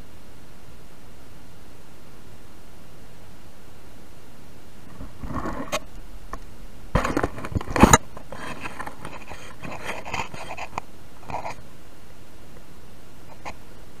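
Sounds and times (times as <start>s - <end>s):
scraping and rustling: 4.8s - 11.6s.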